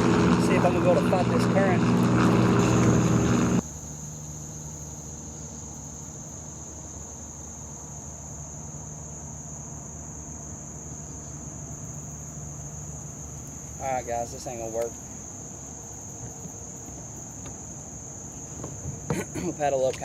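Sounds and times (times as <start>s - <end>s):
loud engine-like drone: 0.0s - 3.7s
insects droning: 0.0s - 20.0s.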